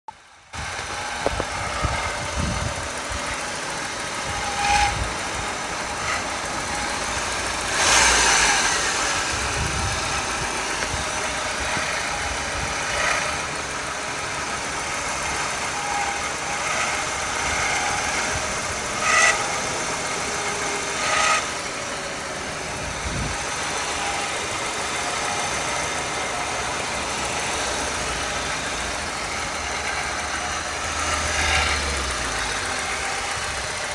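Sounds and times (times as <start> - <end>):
car engine running: 0.1 - 33.9.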